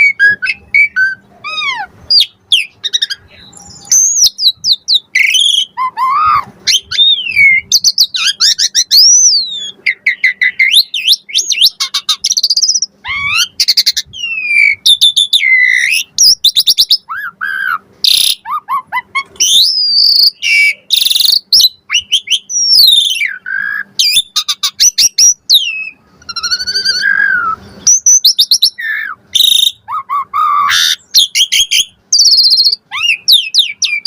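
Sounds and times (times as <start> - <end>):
harsh rasping bird call: 0.0 - 16.3, 16.9 - 34.0
starling singing whistles: 0.0 - 34.0.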